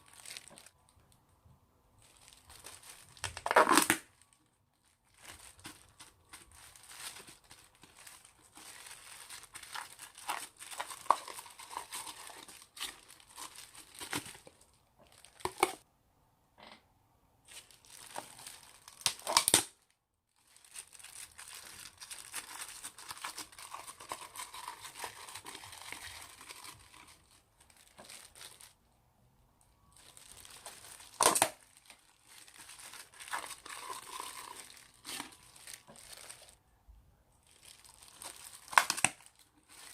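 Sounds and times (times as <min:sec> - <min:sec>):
slime crackling and tearing: 0:02.0 - 0:04.4, 0:05.1 - 0:14.5, 0:17.6 - 0:19.7, 0:30.0 - 0:36.6, 0:37.5 - 0:39.9.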